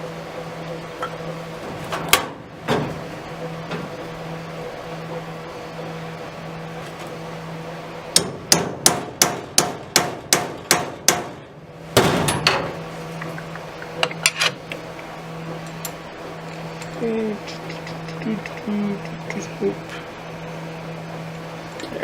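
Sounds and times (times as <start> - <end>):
hammer striking metal: 8.2 - 11.4
low hum: 11.4 - 22.0.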